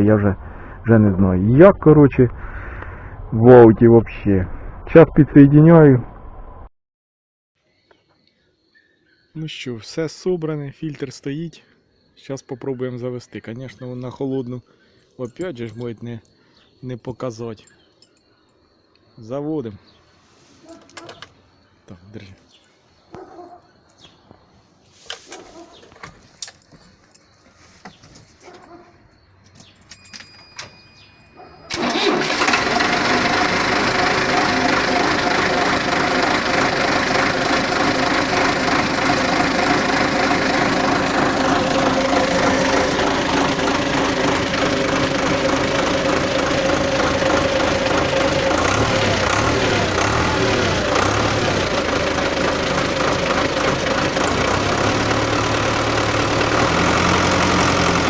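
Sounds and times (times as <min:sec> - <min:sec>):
diesel tractor engine running: 0:31.7 - 0:58.0.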